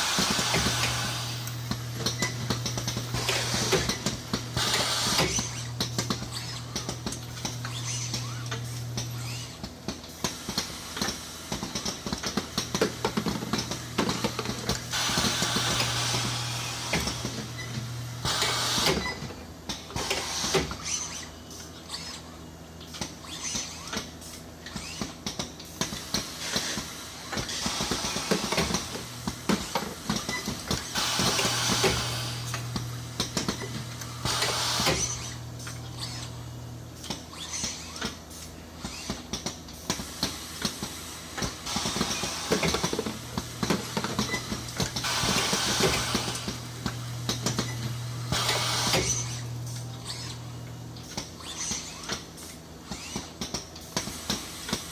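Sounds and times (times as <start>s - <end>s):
machinery clicks and clanks: 0.0s - 54.9s
low electrical hum: 28.7s - 53.9s.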